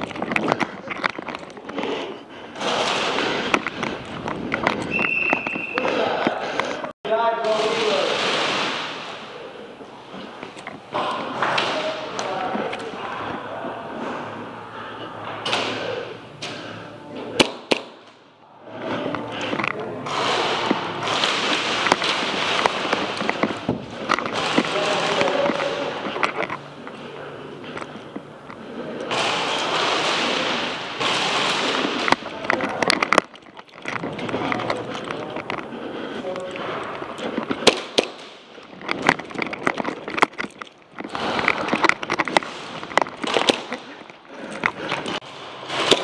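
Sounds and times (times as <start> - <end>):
indistinct voices: 0.0 - 17.6, 18.3 - 46.0
airsoft guns firing: 7.4 - 9.3, 20.0 - 23.2, 24.2 - 26.0, 29.1 - 32.3, 37.6 - 38.5.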